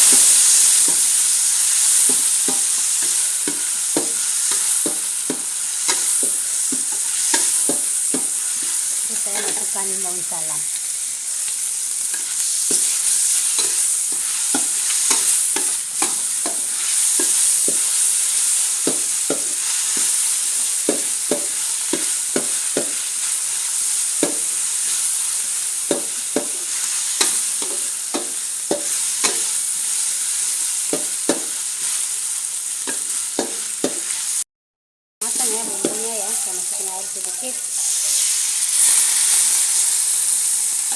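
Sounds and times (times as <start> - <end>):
paste sizzling in oil: 0.0 - 34.4, 35.2 - 40.9
utensil scraping a pan: 2.1 - 10.0, 12.1 - 18.0.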